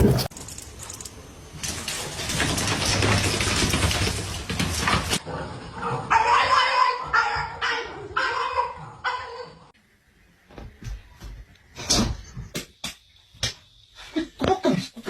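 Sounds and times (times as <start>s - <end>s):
noise: 0.0s - 15.0s
dog barking: 5.8s - 9.6s.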